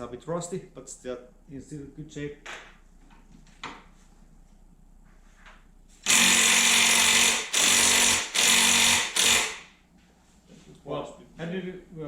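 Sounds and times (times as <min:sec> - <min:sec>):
power drill running: 0:06.0 - 0:09.7.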